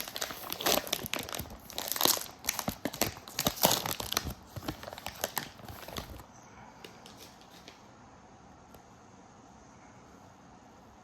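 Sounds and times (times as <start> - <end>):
wrapper tearing and crinkling: 0.0 - 6.2.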